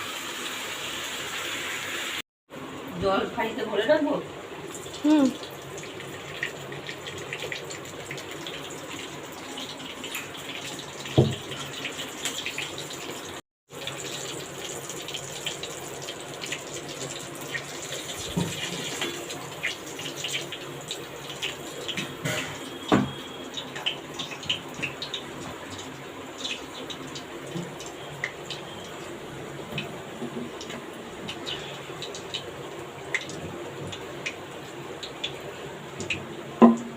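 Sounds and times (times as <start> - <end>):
chicken frying in oil: 3.0 - 36.9
knocks in pan: 36.6 - 36.9.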